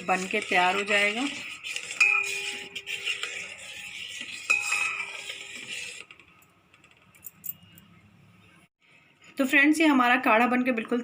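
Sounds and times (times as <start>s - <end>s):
metal spoon stirring in a pan: 0.0s - 6.4s.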